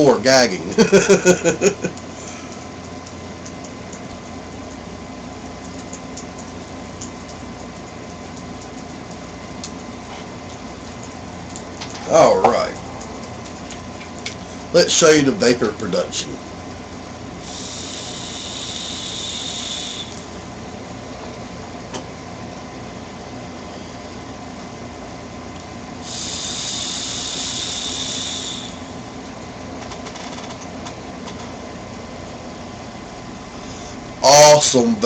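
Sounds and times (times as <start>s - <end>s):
vape draw hiss: 17.4s - 20.4s, 26.0s - 29.0s.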